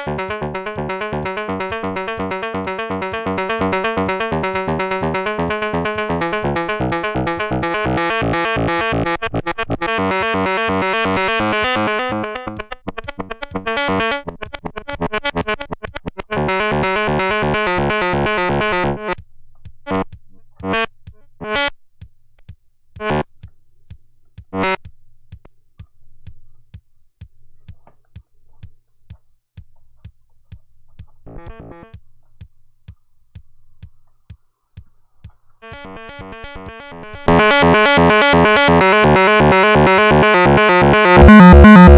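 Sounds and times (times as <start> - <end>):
synthesizer arpeggio: 0.0 - 19.2, 35.6 - 41.9.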